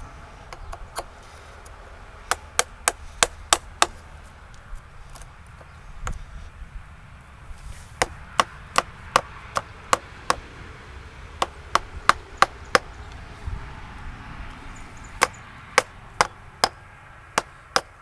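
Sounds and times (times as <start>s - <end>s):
mallet striking wood chisel: 2.3s - 4.0s, 8.0s - 10.5s, 11.4s - 12.9s, 15.2s - 16.8s, 17.4s - 18.0s.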